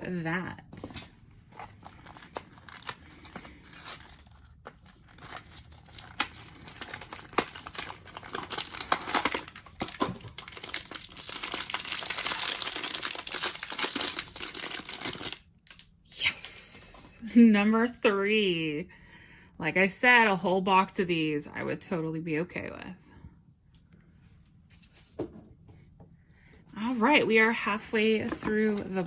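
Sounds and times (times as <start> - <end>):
packaging clicks and rustles: 0.8 - 15.8
packaging crinkling and tearing: 0.8 - 15.9.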